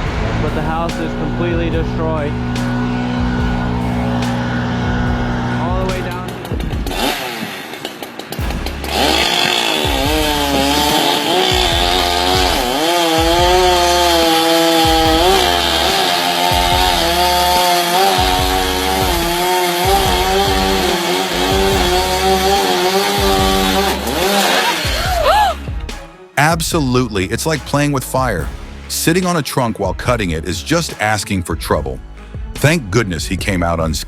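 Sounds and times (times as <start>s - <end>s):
chainsaw cutting wood: 0.0s - 26.1s.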